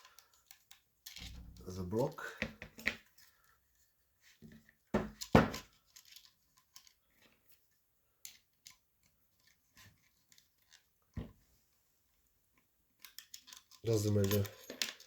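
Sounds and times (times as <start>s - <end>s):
clicks and knocks of metal parts: 13.0s - 15.0s.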